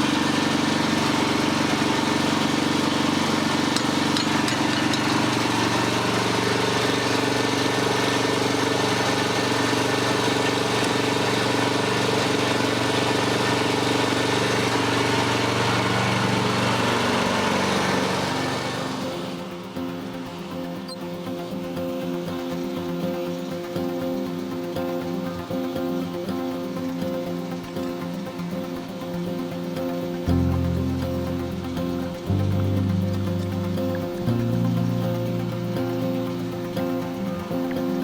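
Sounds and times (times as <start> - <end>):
engine running steadily: 0.0 - 20.5, 30.1 - 38.0.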